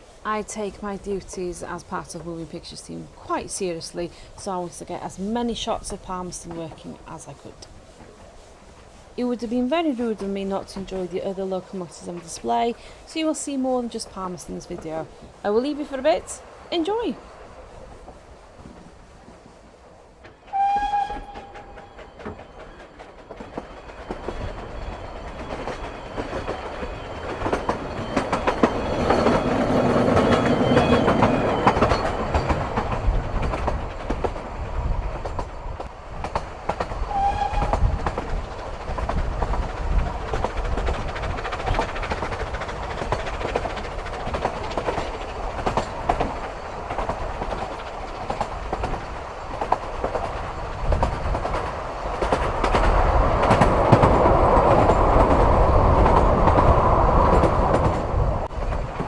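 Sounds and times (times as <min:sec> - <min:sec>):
steam train running: 0:00.0 - 0:59.0
steam locomotive whistle: 0:20.4 - 0:22.3, 0:37.1 - 0:38.0.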